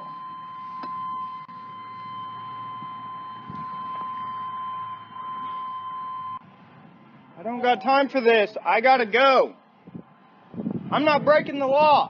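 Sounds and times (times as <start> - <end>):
high electronic tone: 0.0 - 6.4.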